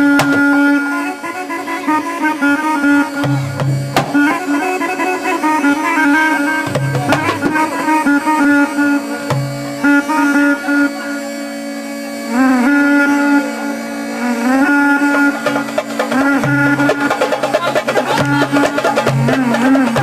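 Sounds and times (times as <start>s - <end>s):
hand drum strikes: 0.0s - 0.7s, 3.1s - 4.6s, 6.6s - 8.4s, 9.1s - 9.9s, 15.0s - 20.0s
folk melody over drone: 0.0s - 20.0s.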